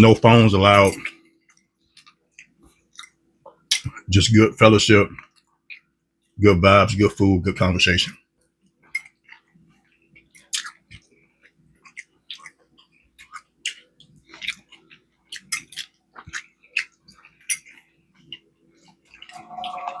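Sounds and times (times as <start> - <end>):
person chewing: 8.8 - 20.0.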